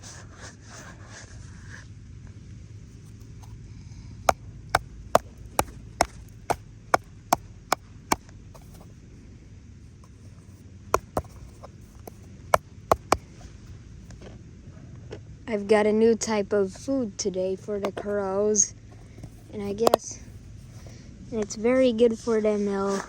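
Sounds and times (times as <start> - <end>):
sharp knocks on wood: 5.2 - 7.1, 11.0 - 12.2, 12.9 - 13.3.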